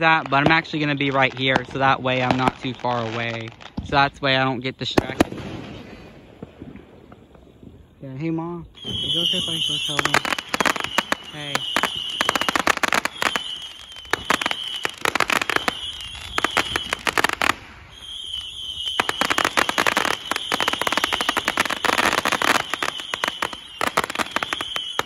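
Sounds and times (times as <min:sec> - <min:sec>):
fireworks crackling and popping: 0:00.0 - 0:25.0.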